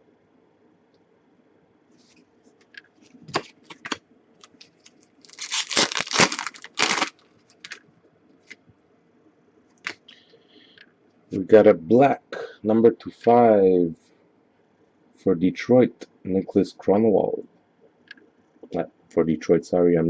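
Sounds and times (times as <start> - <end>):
foil wrapper crinkling and tearing: 3.3 - 7.8.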